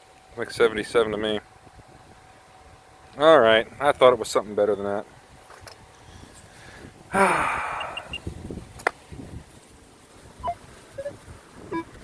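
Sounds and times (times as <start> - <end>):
man sighing: 7.1 - 8.2
faint short tones: 7.6 - 8.3.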